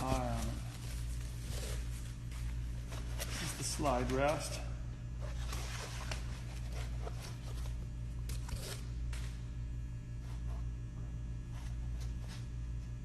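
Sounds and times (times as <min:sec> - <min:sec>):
rustling and scraping handling: 0:00.0 - 0:08.9
low electrical hum: 0:00.0 - 0:13.0.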